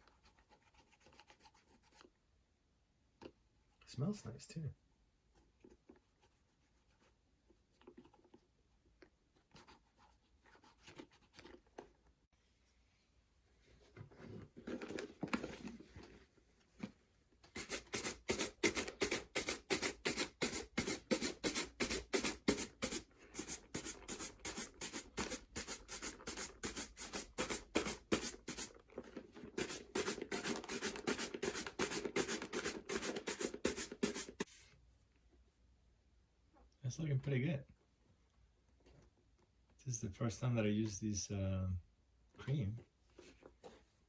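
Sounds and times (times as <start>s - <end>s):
shoe brush buffing leather boot: 17.6s - 28.8s, 29.6s - 34.5s.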